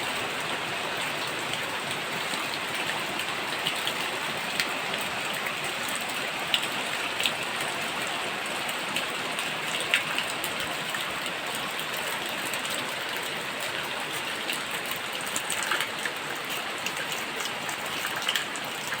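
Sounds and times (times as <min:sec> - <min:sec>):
steady rain falling: 0:00.0 - 0:19.0.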